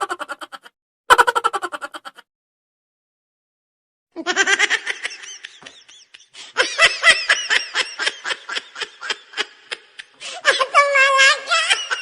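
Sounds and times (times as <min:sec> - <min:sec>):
high-pitched laughter bursts: 0:00.0 - 0:02.2.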